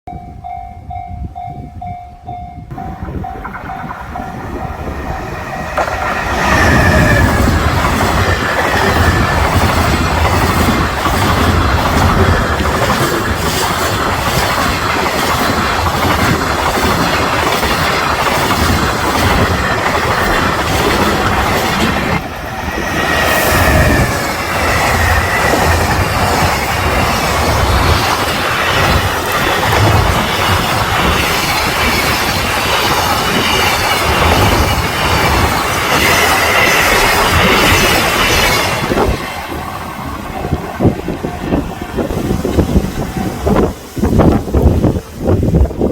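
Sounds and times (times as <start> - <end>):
level-crossing warning bell: 0.1 - 6.4
freight train passing at speed: 0.1 - 45.9
wheels clacking over rail joints: 2.7 - 44.6.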